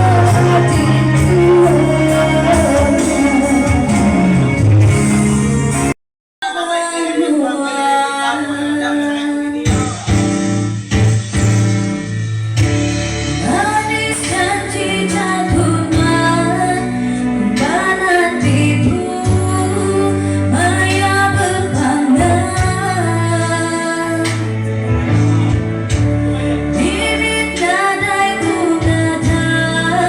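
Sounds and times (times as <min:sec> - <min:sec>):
woman singing with vibrato: 0:00.0 - 0:04.6, 0:06.4 - 0:09.7, 0:13.4 - 0:24.8, 0:26.7 - 0:30.0
band accompaniment: 0:00.0 - 0:06.0, 0:09.6 - 0:30.0
steady bass line: 0:00.0 - 0:06.0, 0:09.7 - 0:30.0.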